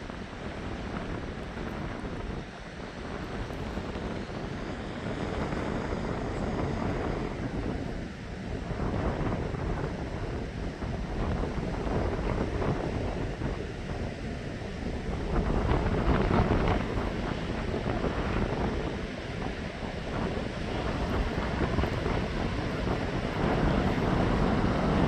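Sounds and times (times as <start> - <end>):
wind buffeting microphone: 0.0 - 25.0.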